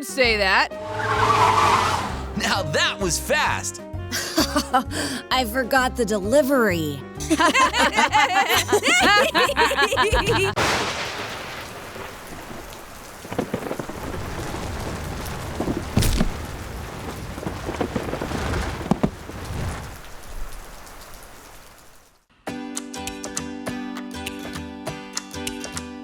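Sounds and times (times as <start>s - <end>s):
steady rain: 10.5s - 22.3s
thunder: 10.6s - 20.8s.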